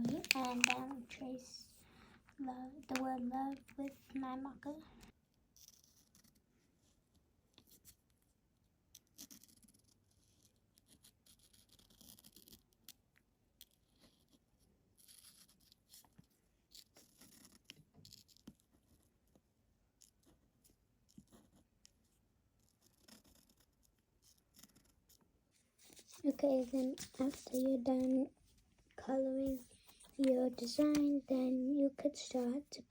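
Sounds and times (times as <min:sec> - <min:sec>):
marker scratching on paper: 0:09.2 - 0:12.6, 0:15.0 - 0:18.3, 0:25.8 - 0:28.2, 0:29.4 - 0:31.4.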